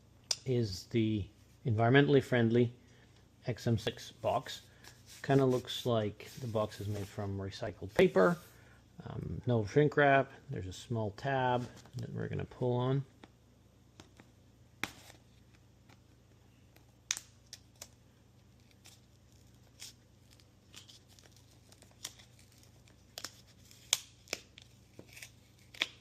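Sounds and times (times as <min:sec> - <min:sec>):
paper tear strip ripping: 0:17.1 - 0:26.0.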